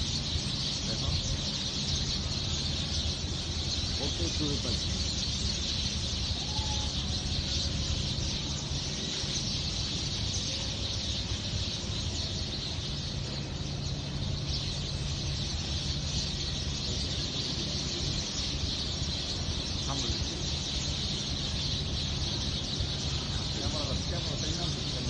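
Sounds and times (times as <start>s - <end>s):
sparrows chirping: 0.0s - 25.0s
steady low rumble: 0.0s - 25.0s.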